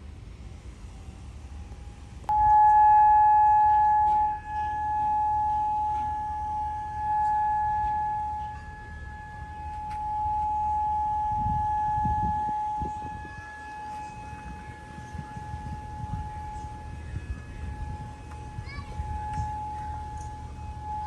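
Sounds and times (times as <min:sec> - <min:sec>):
warning siren steady tone: 0:01.0 - 0:21.0.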